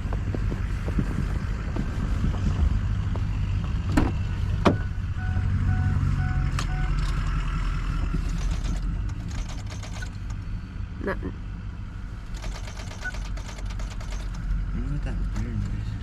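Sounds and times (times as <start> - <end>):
truck engine idling: 0.0 - 16.0
electronic warning chime beeps: 4.8 - 7.0
sharp clicks: 8.0 - 10.4, 12.3 - 14.6.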